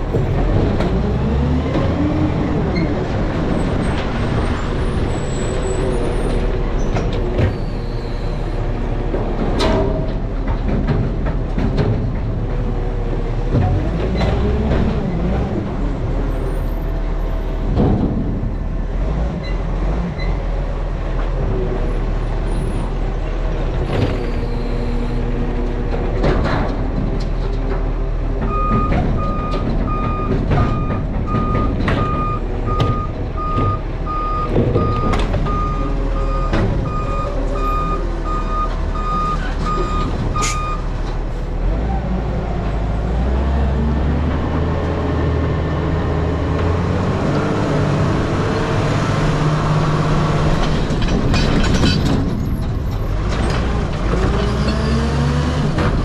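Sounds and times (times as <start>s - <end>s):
knocks and clanks: 0.0s - 16.4s, 17.6s - 20.3s, 22.9s - 42.0s, 44.0s - 56.0s
garbage truck engine running: 0.0s - 56.0s
reversing alarm beeping: 28.5s - 40.9s.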